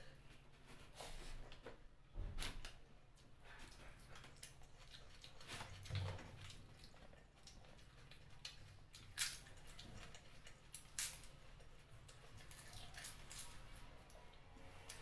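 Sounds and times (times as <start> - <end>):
wet chewing and sucking: 3.4 - 15.0.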